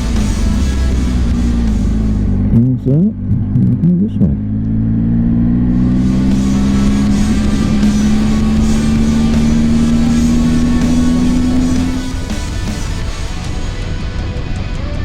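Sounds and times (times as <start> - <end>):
rock music with guitar: 0.0 - 15.0
motorcycle engine pulling away: 4.4 - 13.8.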